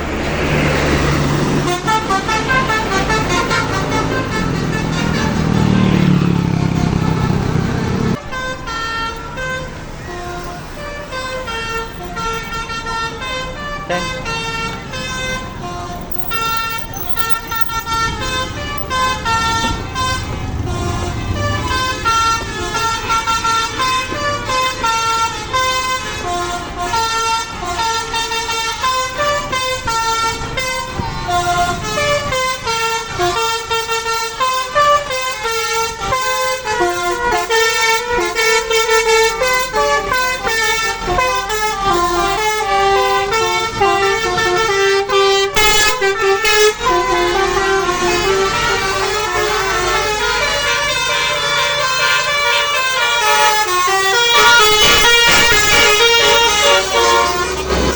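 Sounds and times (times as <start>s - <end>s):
bus engine running: 0.0s - 57.9s
multi-tone air horn melody: 1.6s - 57.9s.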